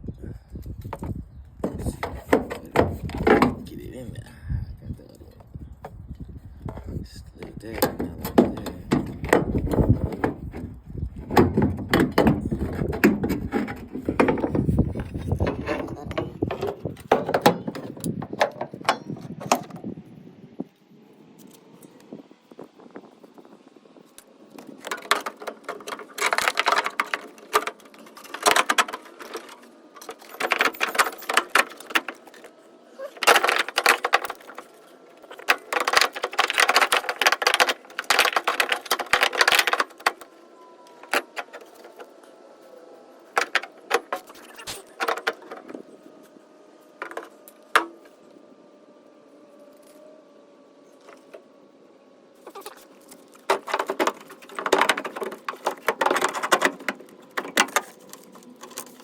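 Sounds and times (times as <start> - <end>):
metal tools clinking and rattling: 25.8 - 40.2.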